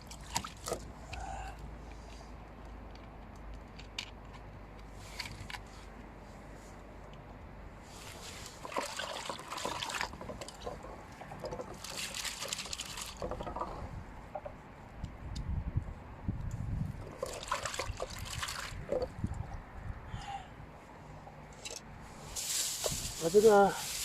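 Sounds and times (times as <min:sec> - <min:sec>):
water splashing and trickling: 0:00.0 - 0:01.4, 0:07.9 - 0:14.1, 0:16.9 - 0:19.7, 0:22.3 - 0:24.0
water swishing: 0:07.9 - 0:13.8, 0:17.0 - 0:19.0.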